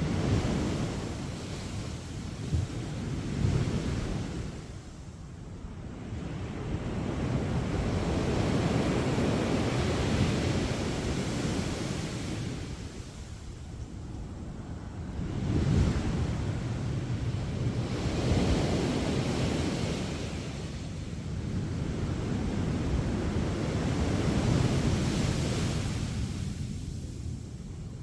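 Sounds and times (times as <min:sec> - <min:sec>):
sea waves breaking on beach: 0:07.2 - 0:13.6.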